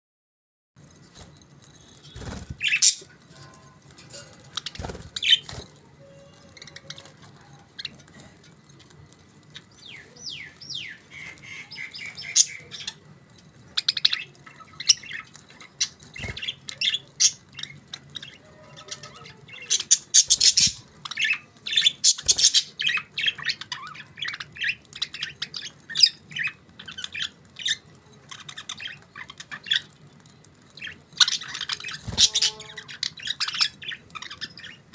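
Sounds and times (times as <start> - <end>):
budgerigars chirping and chattering: 1.9 - 8.4, 9.4 - 34.9
bird squawks: 31.2 - 34.9.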